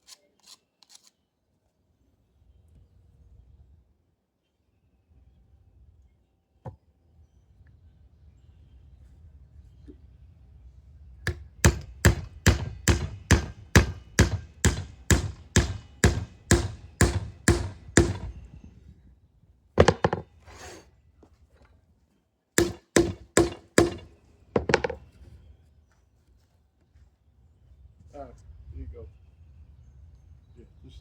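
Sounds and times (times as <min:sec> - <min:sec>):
hammer striking wood: 0:11.3 - 0:18.4, 0:19.8 - 0:20.3, 0:22.6 - 0:25.0.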